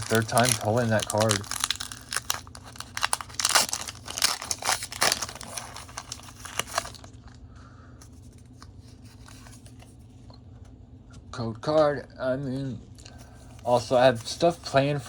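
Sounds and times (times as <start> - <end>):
foil wrapper crinkling and tearing: 0.0 - 7.4, 13.1 - 15.0.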